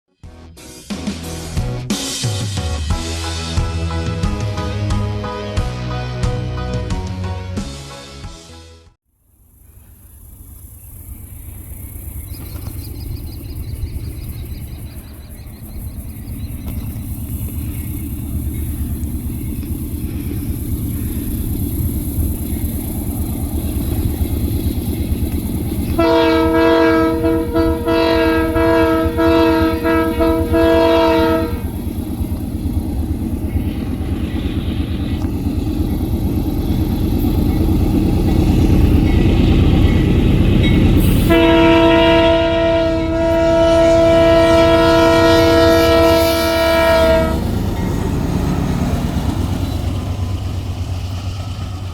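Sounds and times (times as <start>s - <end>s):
locomotive engines rumbling: 9.3s - 51.9s
locomotive air horn: 25.9s - 32.1s, 41.0s - 49.9s.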